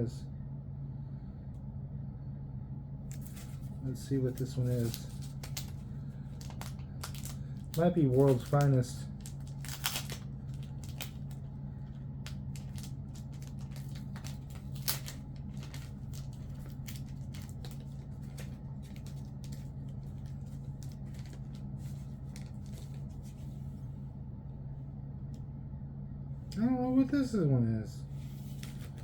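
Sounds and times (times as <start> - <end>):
steady low hum: 0.0 - 29.0
plastic bag crinkling: 3.1 - 23.5, 28.3 - 29.0.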